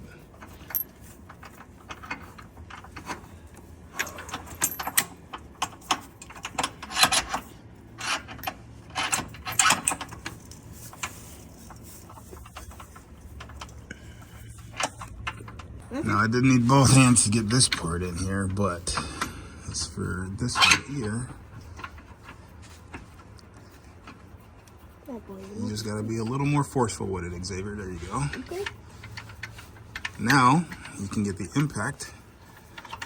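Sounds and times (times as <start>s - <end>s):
metallic clinks of tools and bolts: 4.0s - 11.8s.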